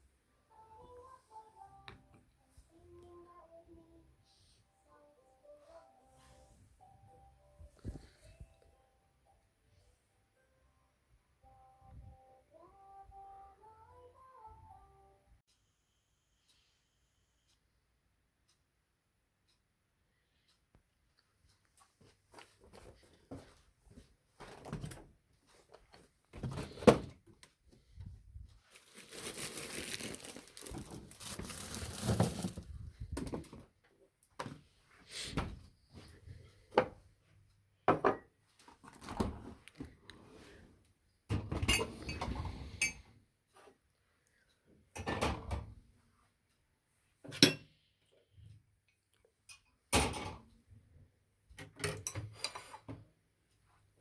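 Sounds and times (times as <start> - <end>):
dishes and cutlery clinking: 41.4 - 43.1, 47.3 - 47.7, 51.7 - 53.0.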